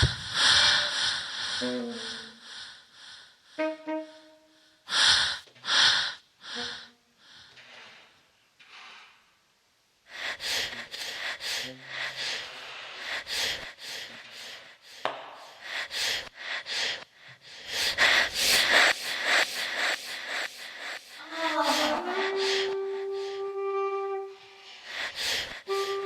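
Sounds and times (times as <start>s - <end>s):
heavy breathing: 0.0s - 3.6s, 10.1s - 23.6s, 24.3s - 26.0s.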